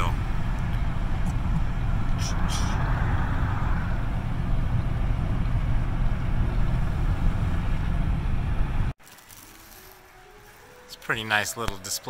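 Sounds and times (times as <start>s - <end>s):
road and tyre rumble in car: 0.0s - 9.0s.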